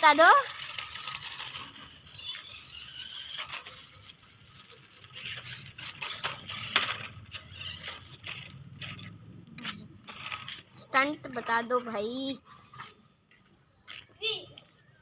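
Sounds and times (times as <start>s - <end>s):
plastic car clicking and rattling: 0.0s - 9.1s, 10.0s - 10.9s
toy car electric motors whirring: 0.0s - 13.1s.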